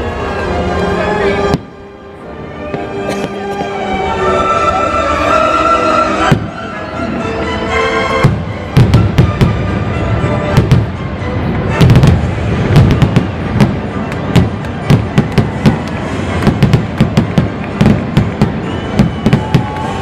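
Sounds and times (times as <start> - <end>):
music playing: 0.0 - 20.0
fireworks cracks and bangs: 6.2 - 6.7, 8.2 - 20.0
fireworks low booms: 6.3 - 6.7, 8.2 - 20.0.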